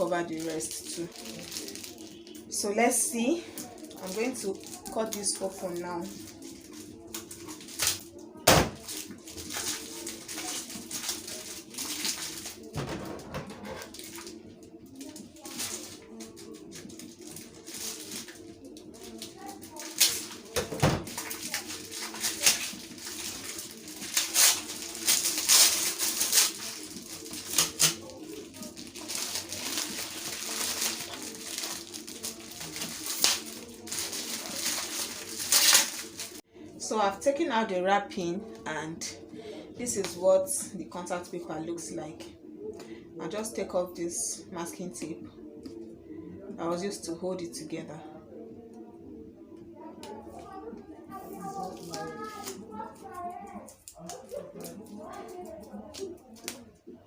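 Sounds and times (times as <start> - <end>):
plastic wrapping rustling and crinkling: 0.0 - 36.4, 51.1 - 56.7.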